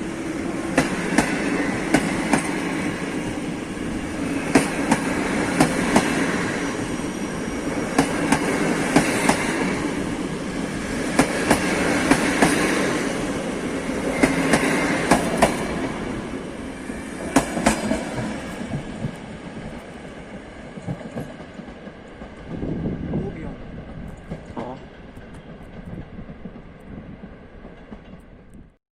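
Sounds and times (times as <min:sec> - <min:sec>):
train wheels clattering over rail joints: 0:00.7 - 0:02.9, 0:04.4 - 0:06.4, 0:07.9 - 0:09.7, 0:11.1 - 0:12.8, 0:14.0 - 0:15.8.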